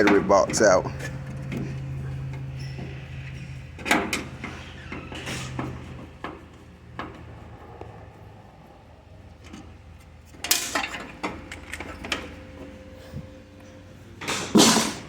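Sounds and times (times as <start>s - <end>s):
metal tools clanking and rattling: 0.0s - 6.1s, 10.3s - 12.7s.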